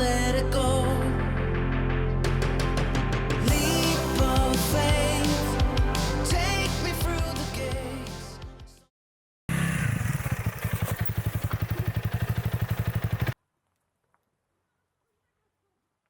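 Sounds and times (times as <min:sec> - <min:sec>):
motorcycle engine running: 0:09.5 - 0:13.4.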